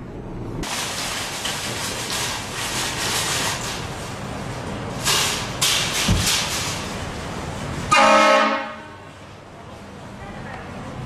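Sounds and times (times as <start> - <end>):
train horn: 7.9 - 9.1.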